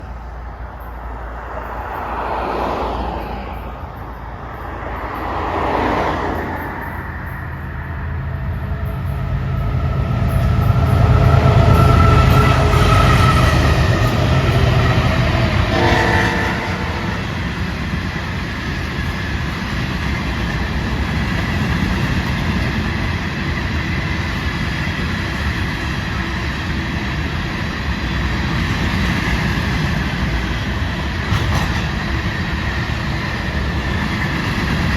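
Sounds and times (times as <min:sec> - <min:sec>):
diesel locomotive engines rumbling: 0:00.0 - 0:34.9
train wheels clickety-clack: 0:08.4 - 0:34.9
train horn: 0:08.8 - 0:17.6.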